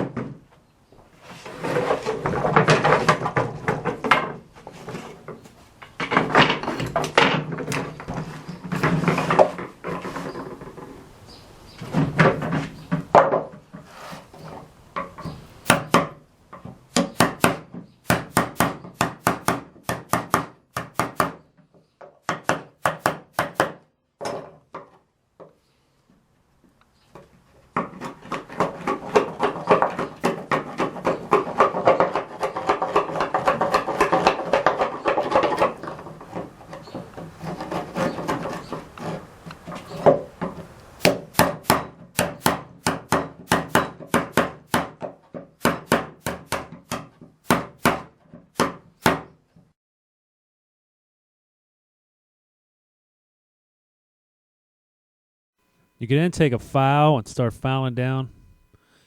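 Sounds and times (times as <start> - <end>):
chisel scraping along wood: 13.8 - 14.3.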